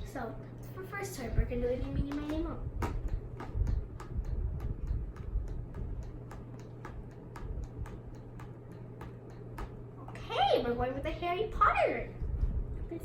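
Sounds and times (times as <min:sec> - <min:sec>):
faint low hum: 0:00.0 - 0:13.0
light taps: 0:01.9 - 0:10.1.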